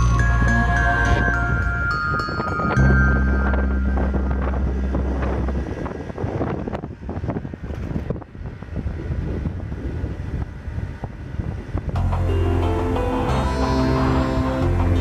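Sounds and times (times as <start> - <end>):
background music: 0.0 - 5.6, 12.0 - 15.0
gusty wind buffeting microphone: 0.0 - 15.0.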